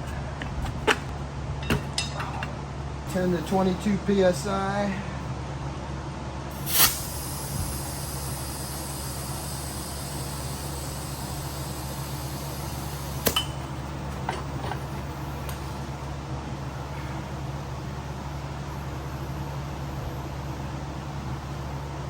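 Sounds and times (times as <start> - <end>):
steady low hum: 0.0 - 22.0
metal tools clinking: 0.6 - 2.6, 13.3 - 15.0.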